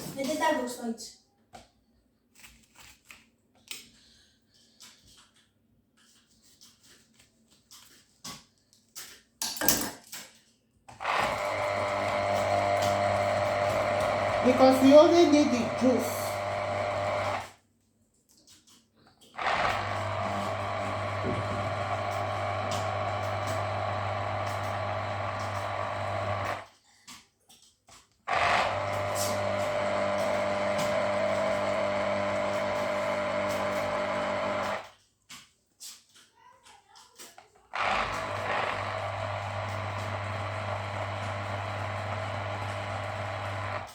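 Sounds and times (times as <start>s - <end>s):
electric juicer motor running: 11.0s - 17.6s, 19.4s - 26.7s, 28.3s - 34.9s, 37.7s - 43.9s.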